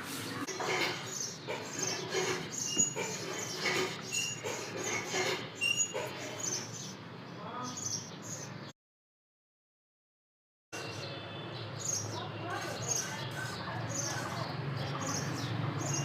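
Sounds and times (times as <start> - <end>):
high bird chirps: 5.6 - 7.0
people's voices: 12.1 - 15.6.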